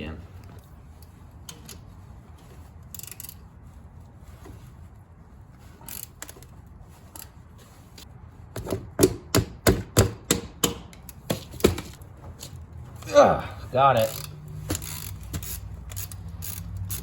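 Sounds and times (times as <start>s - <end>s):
socket ratchet clicking: 14.0s - 17.0s.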